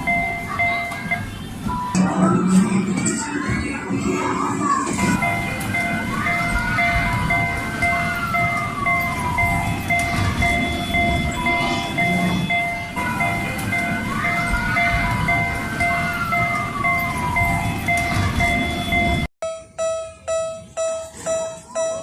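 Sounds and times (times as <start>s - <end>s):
railroad crossing warning bell: 0.0s - 1.3s, 5.2s - 22.0s
sliding electronic tone: 4.1s - 19.3s.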